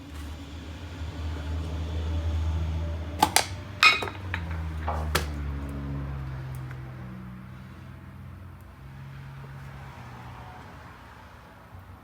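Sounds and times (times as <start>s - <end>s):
metal clinks and knocks: 3.2s - 5.4s
metal rattling clatter: 3.4s - 5.4s.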